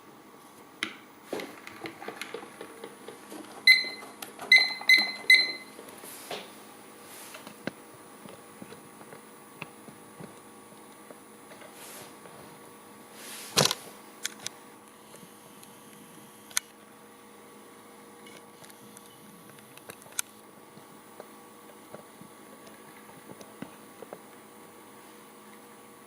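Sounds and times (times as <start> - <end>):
magnetic stirrer humming: 13.8 - 26.0.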